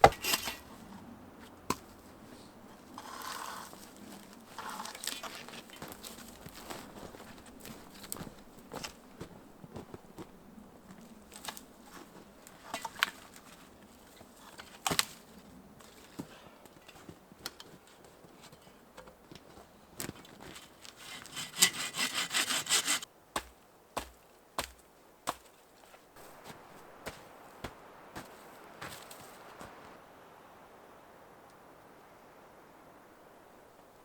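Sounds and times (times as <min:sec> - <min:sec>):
wood knocking and cracking: 0:00.0 - 0:00.6, 0:14.5 - 0:15.2, 0:23.4 - 0:25.5
hand saw cutting wood: 0:00.0 - 0:00.7, 0:03.0 - 0:03.8, 0:20.6 - 0:24.7.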